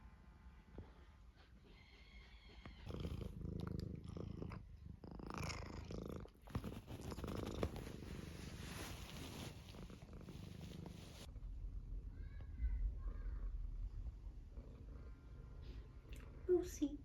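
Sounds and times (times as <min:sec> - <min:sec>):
cat purring: 0:00.6 - 0:11.9, 0:13.7 - 0:16.8
rustling: 0:06.4 - 0:11.3.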